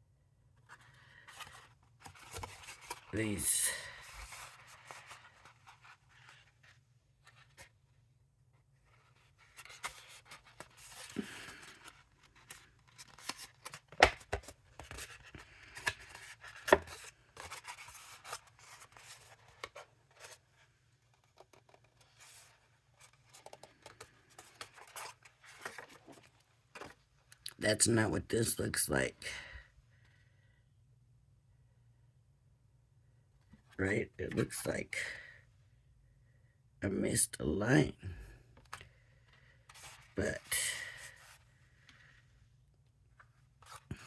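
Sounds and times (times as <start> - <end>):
cardstock rustling and creasing: 0.6 - 3.2, 4.0 - 7.7, 8.8 - 27.1, 39.7 - 40.2.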